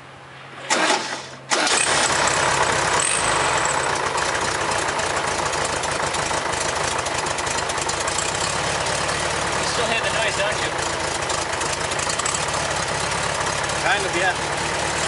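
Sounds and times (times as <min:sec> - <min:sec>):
engine starter cranking: 0:00.6 - 0:06.0
air-cooled engine running: 0:00.7 - 0:15.0.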